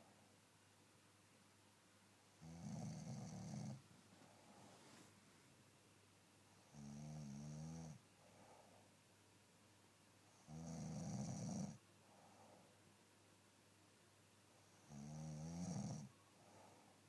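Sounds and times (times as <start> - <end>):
soft breaths: 2.7 - 5.7, 8.0 - 9.1, 11.9 - 13.0, 16.1 - 17.0.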